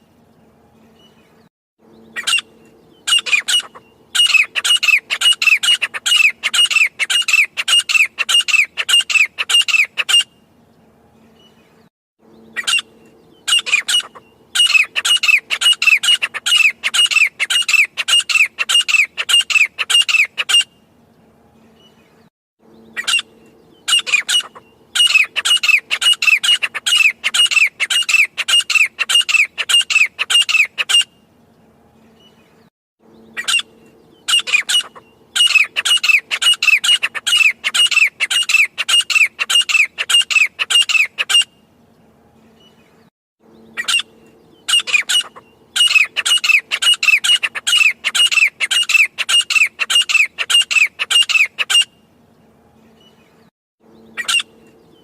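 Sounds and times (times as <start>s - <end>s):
francolin calling: 1.9s - 10.3s, 12.3s - 20.7s, 22.7s - 31.1s, 33.1s - 41.6s, 43.5s - 52.0s, 53.9s - 55.0s.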